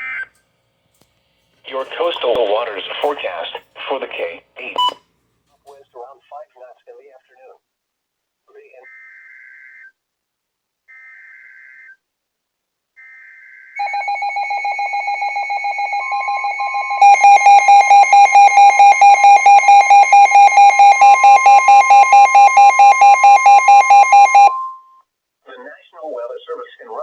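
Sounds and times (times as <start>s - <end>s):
rapid pulsing alarm beep: 13.8s - 24.7s
steady warning alarm tone: 13.8s - 25.0s.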